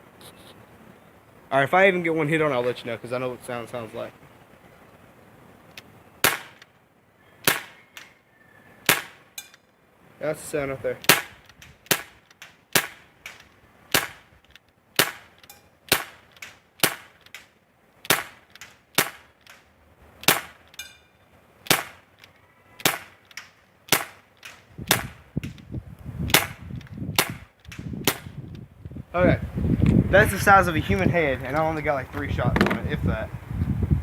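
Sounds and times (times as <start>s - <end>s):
bb pistol shots: 6.2s - 6.7s, 7.4s - 7.8s, 8.8s - 9.2s, 11.0s - 14.3s, 15.0s - 19.6s, 20.2s - 20.7s, 21.6s - 22.1s, 22.8s - 25.6s, 26.3s - 28.4s.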